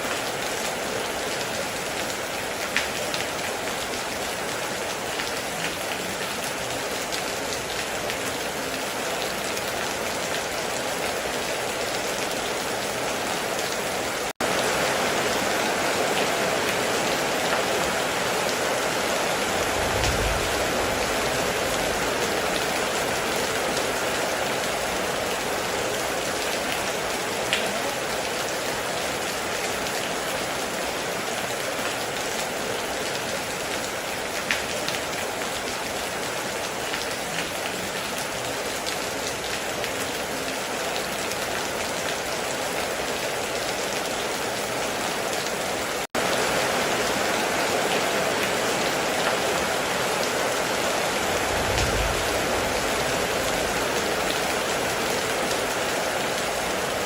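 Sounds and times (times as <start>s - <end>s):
heavy rain: 0.0s - 57.0s
low rumble: 19.5s - 22.2s, 51.3s - 54.0s.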